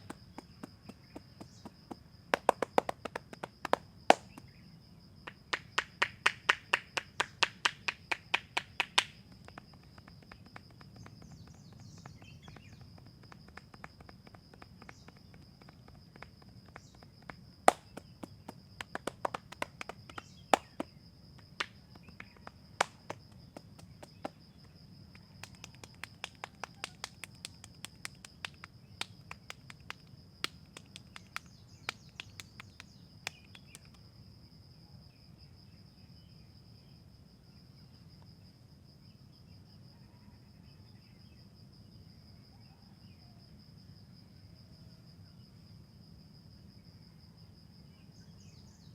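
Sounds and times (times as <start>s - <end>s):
hand slaps and taps on head: 0.0s - 4.5s, 5.3s - 24.4s, 25.4s - 34.0s
high insect drone: 0.0s - 48.9s.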